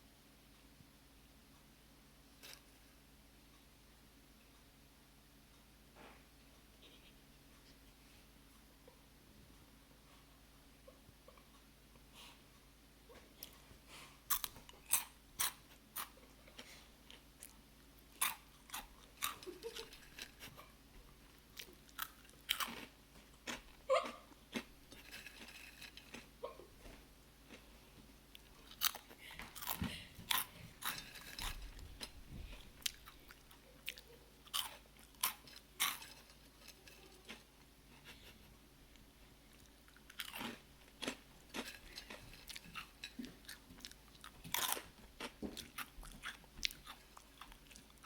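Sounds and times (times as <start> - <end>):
crunching snack: 14.3 - 20.6, 21.6 - 26.4, 28.3 - 32.2, 32.8 - 37.5, 39.6 - 48.0.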